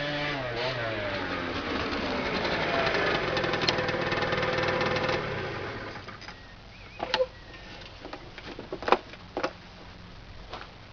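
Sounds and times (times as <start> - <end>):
scooter engine running: 0.0 - 6.2.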